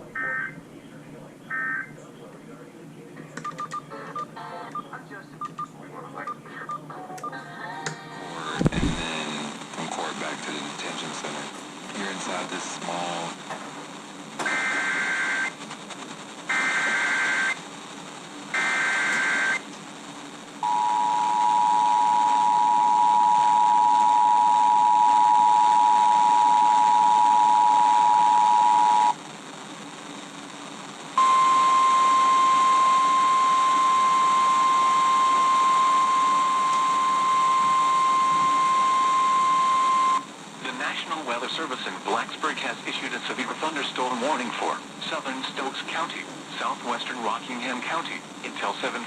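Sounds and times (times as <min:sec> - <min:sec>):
radio hiss: 0:00.0 - 0:49.0
screeching data bursts: 0:18.6 - 0:19.6
two-tone attention signal: 0:31.2 - 0:40.2.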